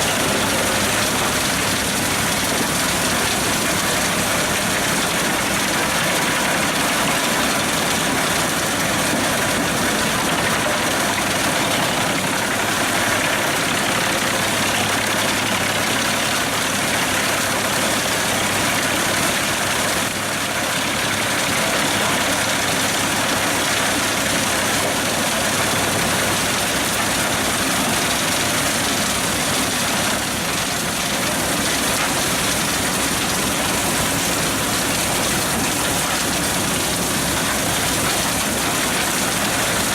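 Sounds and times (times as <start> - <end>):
wood chipper and tractor running: 0.0 - 39.9.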